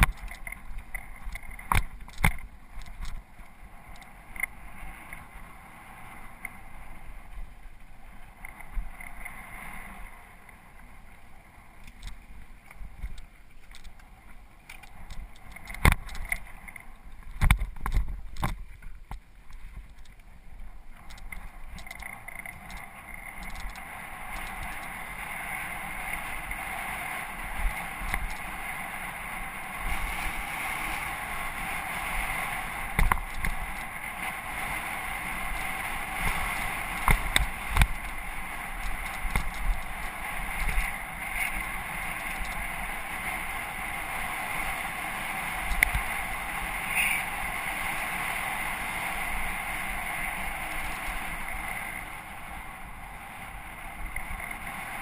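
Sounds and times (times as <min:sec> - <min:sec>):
bike knocks and rattles: 0:00.0 - 0:03.3, 0:14.6 - 0:20.2
bike rolling on dirt: 0:00.0 - 0:55.0
wind noise: 0:00.0 - 0:55.0.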